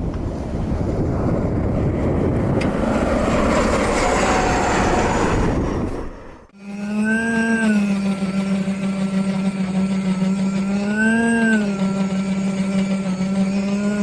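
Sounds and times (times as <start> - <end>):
train rushing through snow: 0.2 - 6.5
steady pitched drone: 2.6 - 14.0.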